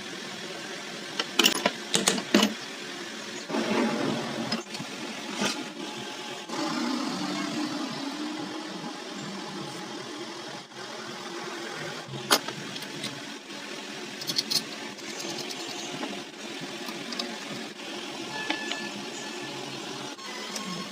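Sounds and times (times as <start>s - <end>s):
small electric motor running: 4.5s - 20.9s.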